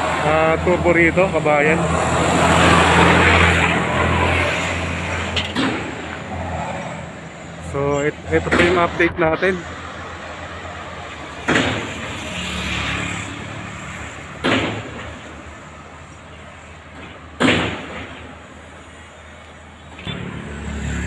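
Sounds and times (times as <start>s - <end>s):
street traffic rumble: 0.0s - 21.0s
sudden loud bangs: 8.4s - 9.3s, 17.4s - 18.3s.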